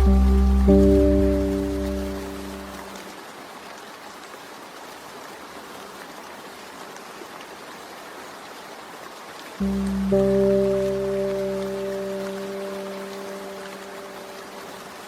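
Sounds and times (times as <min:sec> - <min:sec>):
low music tones: 0:00.0 - 0:03.0, 0:09.6 - 0:15.0
rain on window glass: 0:00.0 - 0:05.3, 0:09.4 - 0:15.0.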